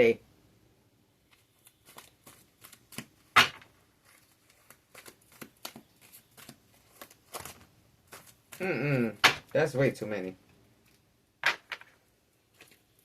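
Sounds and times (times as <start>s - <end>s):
cards being shuffled: 1.3s - 9.5s.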